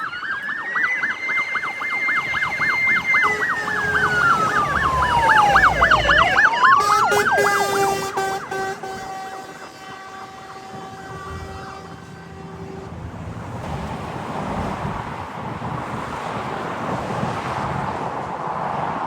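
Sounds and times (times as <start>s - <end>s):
vehicle noise: 0.0s - 19.0s
fire truck air horn: 2.4s - 13.4s
wind noise: 12.9s - 19.0s.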